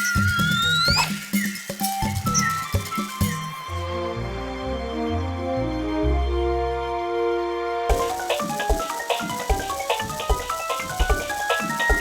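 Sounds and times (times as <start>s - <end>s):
steady drum beat: 0.0s - 3.6s, 7.9s - 12.0s.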